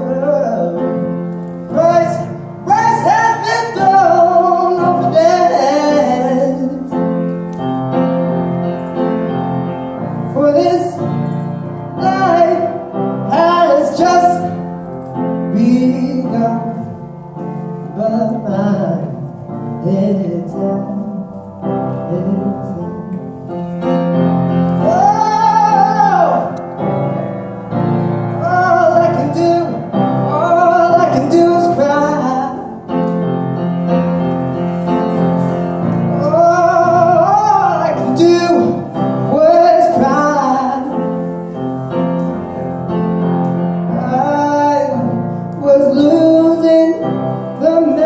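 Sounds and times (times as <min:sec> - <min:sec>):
person singing with vibrato: 0:00.0 - 0:07.1, 0:10.3 - 0:14.6, 0:24.7 - 0:26.8, 0:28.3 - 0:32.9, 0:34.8 - 0:41.4, 0:43.9 - 0:48.0
piano playing: 0:00.0 - 0:48.0.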